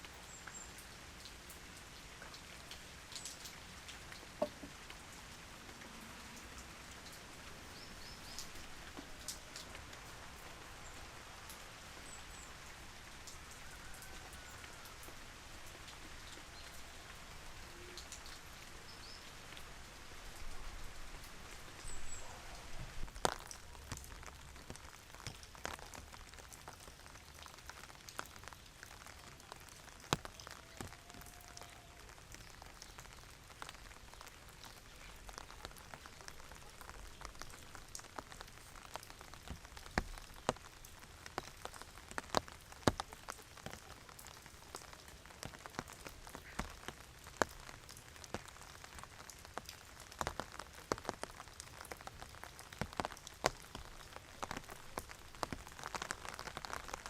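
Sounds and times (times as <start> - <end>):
steady rain: 0.0 - 57.0
drops ticking on hard surface: 4.4 - 4.8.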